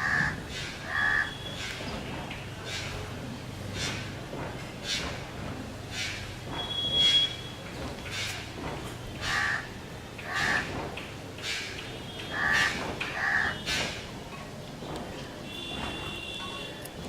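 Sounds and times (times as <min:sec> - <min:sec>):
harsh bird calls: 0:12.2 - 0:13.6.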